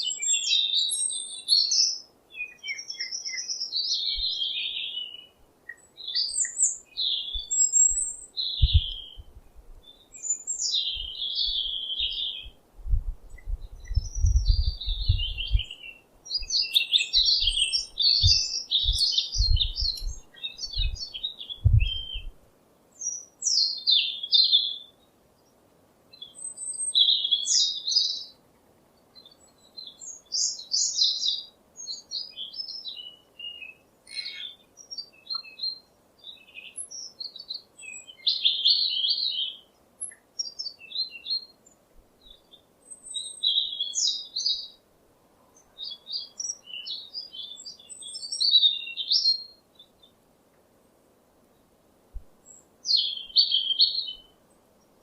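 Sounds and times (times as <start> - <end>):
bird chirping and singing: 0.0 - 12.6, 13.3 - 22.3, 29.2 - 41.5, 45.8 - 50.1, 52.5 - 54.3.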